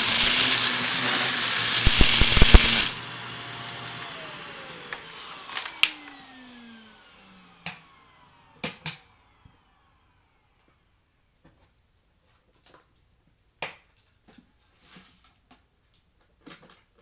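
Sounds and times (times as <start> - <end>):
vacuum cleaner spinning down: 0.0 - 10.2.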